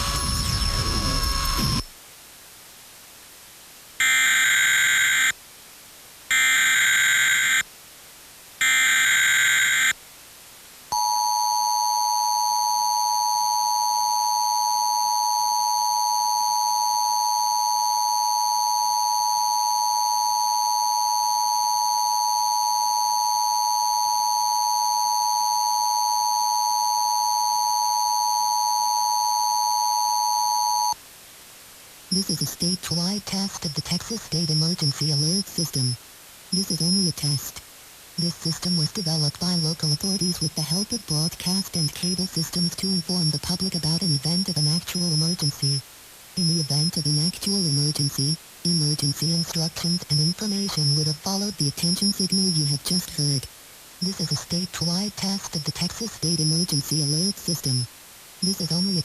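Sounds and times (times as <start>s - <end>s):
steady two-tone alarm: 0.0s - 1.8s, 4.0s - 5.4s, 6.3s - 7.6s, 8.6s - 10.0s, 11.0s - 31.0s
digital header data bursts: 0.0s - 1.9s.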